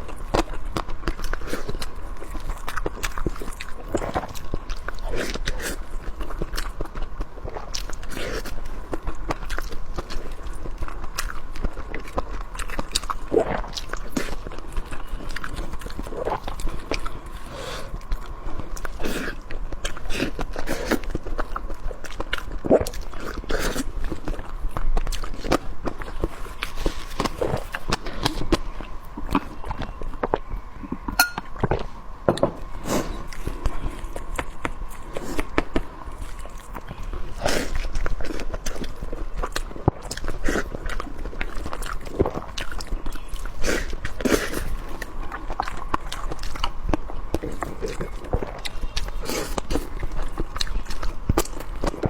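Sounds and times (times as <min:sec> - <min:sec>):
wet chewing clicks and crunches: 0:00.0 - 0:52.0
utensil clinking on dish: 0:31.2 - 0:31.5.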